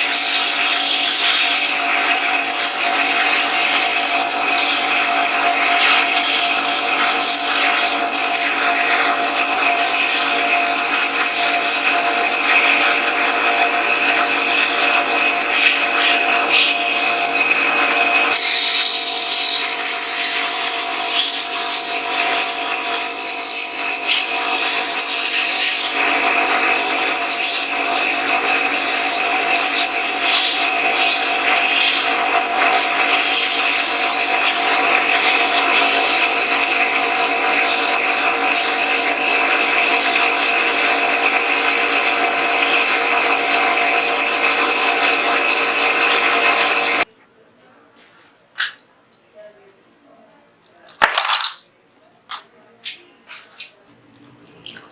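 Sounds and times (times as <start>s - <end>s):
sandblaster hissing: 18.3s - 41.2s.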